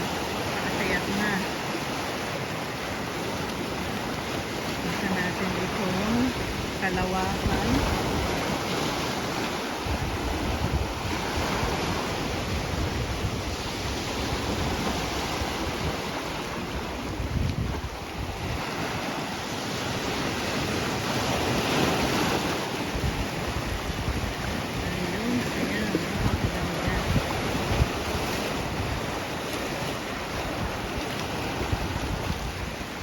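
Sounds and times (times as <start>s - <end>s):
sea waves washing on shore: 0.0s - 33.0s
wind buffeting microphone: 0.0s - 33.0s.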